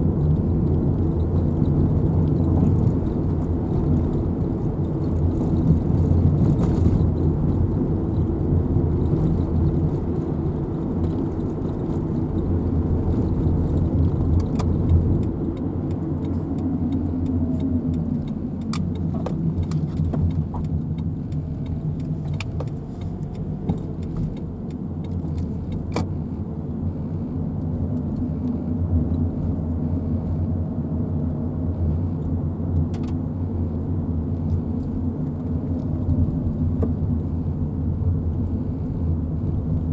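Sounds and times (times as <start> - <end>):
car engine and road rumble: 0.0 - 39.9
light clicks and rattles: 0.2 - 26.2.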